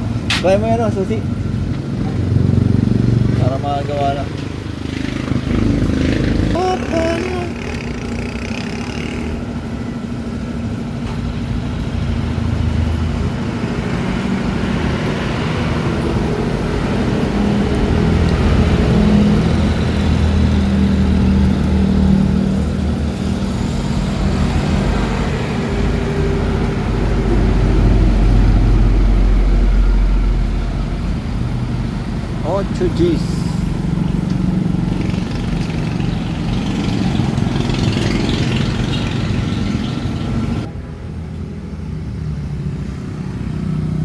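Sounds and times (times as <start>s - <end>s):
motorcycle engine revving: 0.3s - 10.3s, 12.1s - 40.7s.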